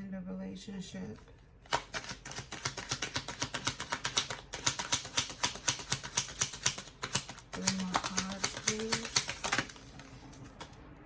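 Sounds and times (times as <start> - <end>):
cards being shuffled: 1.1 - 10.8.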